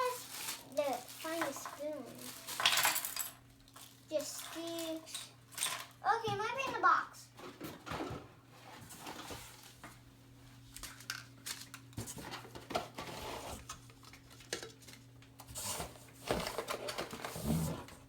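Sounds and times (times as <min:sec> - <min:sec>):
rustling: 0:00.0 - 0:03.1
small items clattering in box: 0:00.0 - 0:06.0, 0:14.0 - 0:17.8.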